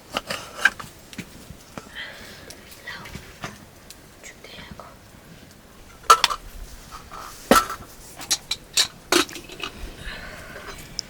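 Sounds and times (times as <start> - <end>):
metal utensils clinking: 6.0 - 6.4, 7.0 - 11.0.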